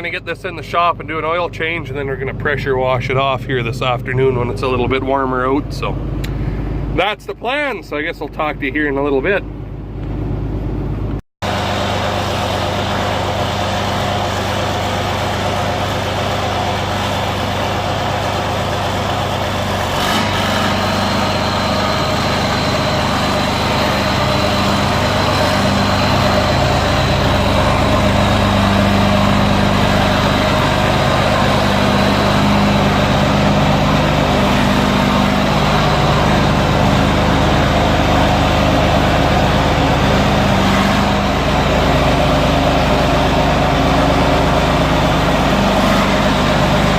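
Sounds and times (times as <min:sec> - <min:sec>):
tractor diesel engine running: 0:00.0 - 0:46.9
click: 0:06.2 - 0:06.4.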